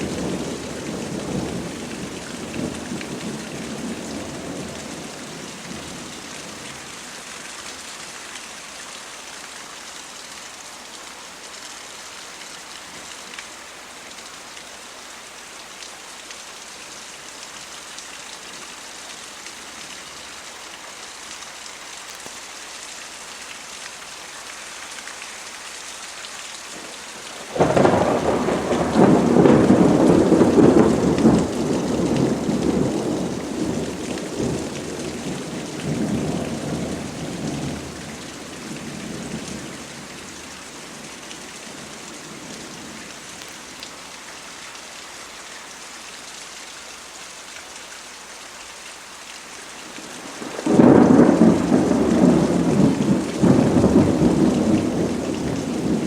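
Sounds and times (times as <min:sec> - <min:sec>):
steady rain falling: 0:00.0 - 0:56.0
thunder rolling: 0:27.4 - 0:34.6, 0:50.3 - 0:56.0
loud thunder peal: 0:27.5 - 0:34.6.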